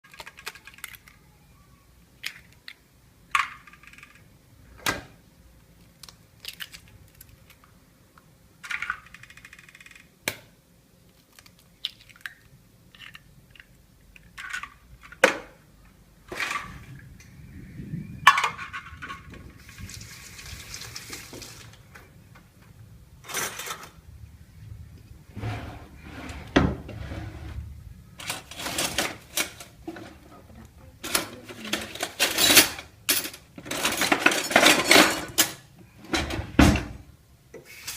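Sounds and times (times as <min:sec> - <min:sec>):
utensils and dishes clinking: 0:31.0 - 0:35.6.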